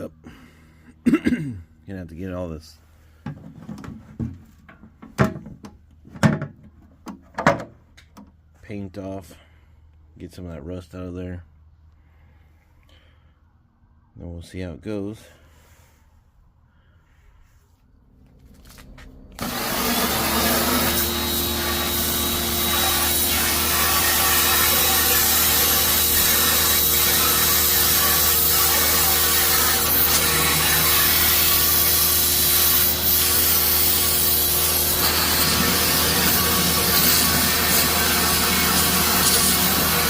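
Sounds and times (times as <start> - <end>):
pressure washer motor humming: 18.6 - 40.0
water jet hissing on sheet metal: 20.3 - 40.0.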